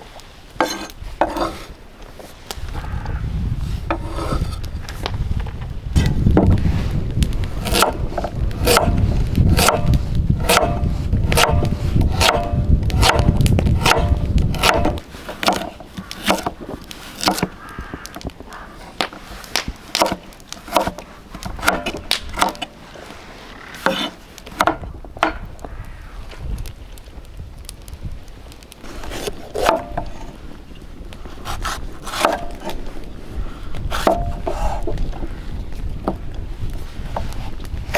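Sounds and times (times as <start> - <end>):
chopping blows on wood: 6.0 - 18.4, 19.0 - 22.8, 23.8 - 25.5, 33.8 - 35.0.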